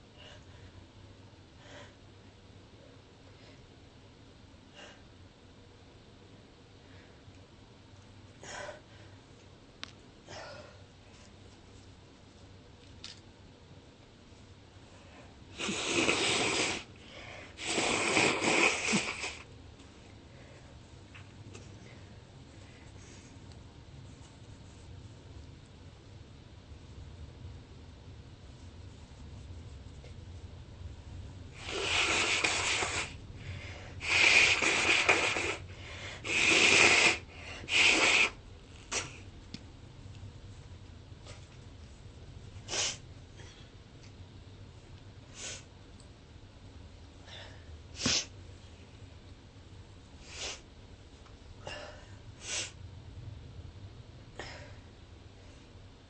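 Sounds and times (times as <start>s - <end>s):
harsh nasal breath blasts: 15.5s - 19.5s, 31.6s - 39.2s.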